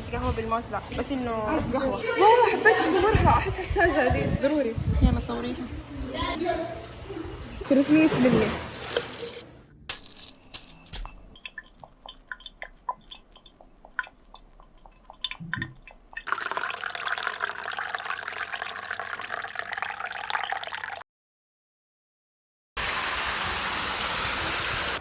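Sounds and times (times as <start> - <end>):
liquid dripping into container: 11.0 - 21.0
water rushing: 13.9 - 21.0.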